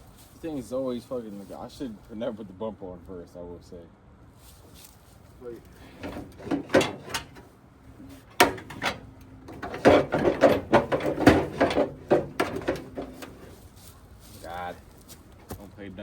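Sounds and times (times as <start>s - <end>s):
metal knocks clanks and scrapes: 5.7s - 13.7s
rattling knocks: 5.8s - 13.6s.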